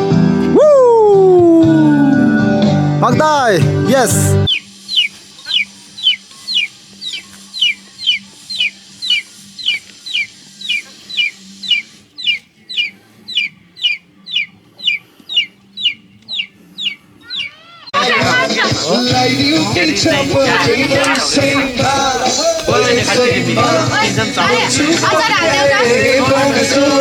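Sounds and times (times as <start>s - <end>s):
bird peeping: 4.5s - 17.6s.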